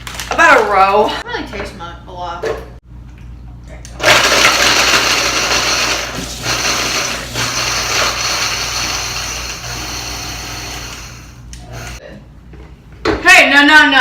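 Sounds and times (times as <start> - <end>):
blender grinding cookies: 4.0 - 12.0.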